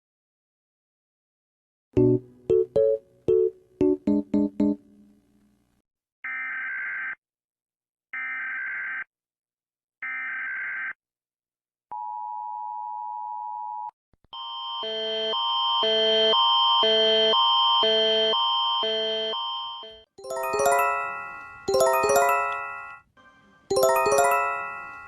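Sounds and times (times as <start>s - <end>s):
two-chord alarm: 14.4s - 23.1s.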